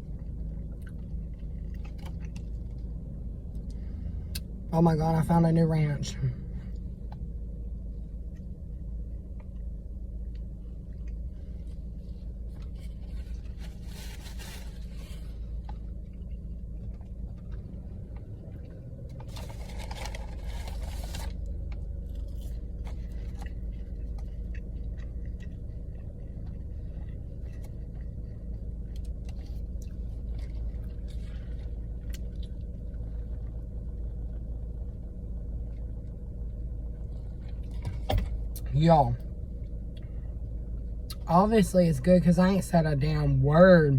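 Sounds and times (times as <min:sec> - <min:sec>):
car engine idling: 0:00.0 - 0:43.9
scratchy rustles: 0:12.7 - 0:15.3
chewing: 0:22.0 - 0:32.7.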